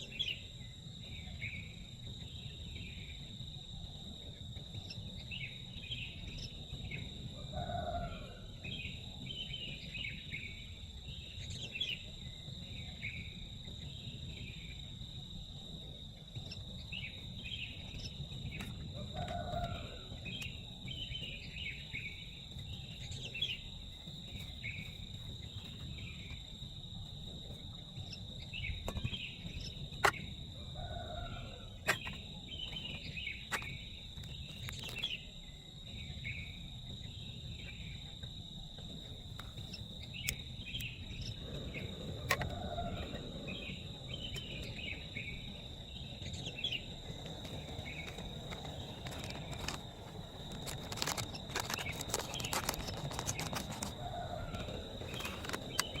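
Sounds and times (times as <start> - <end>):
insects trilling: 0.0 - 56.0
birds chirping: 16.4 - 38.1, 38.8 - 56.0.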